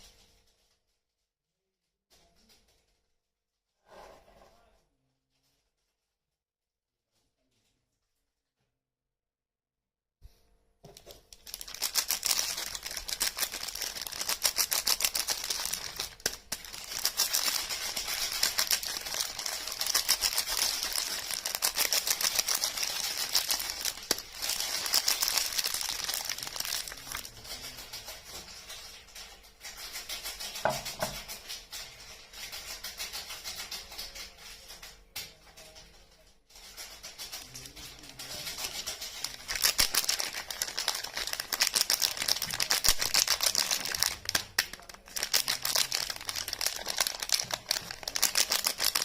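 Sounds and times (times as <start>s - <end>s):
soap packaging crinkling and tearing: 11.3s - 27.4s, 38.5s - 49.0s.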